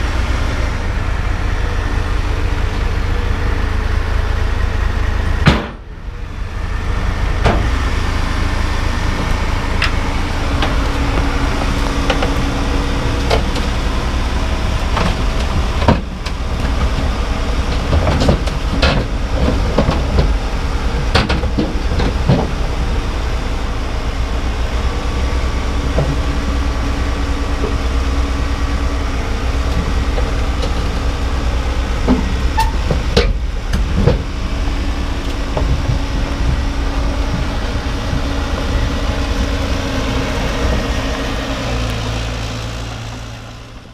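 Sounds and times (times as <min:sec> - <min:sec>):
truck engine rumbling: 0:00.0 - 0:43.9
rattles and knocks: 0:14.8 - 0:22.6, 0:32.0 - 0:34.6, 0:35.3 - 0:39.4.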